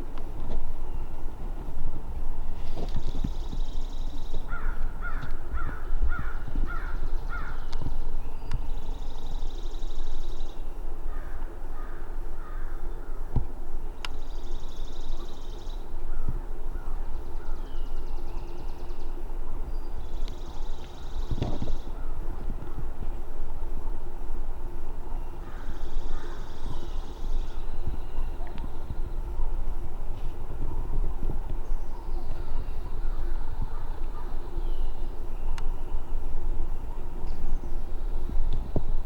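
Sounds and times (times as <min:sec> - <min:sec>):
harsh falling bird calls: 0:03.0 - 0:13.3, 0:25.2 - 0:29.4.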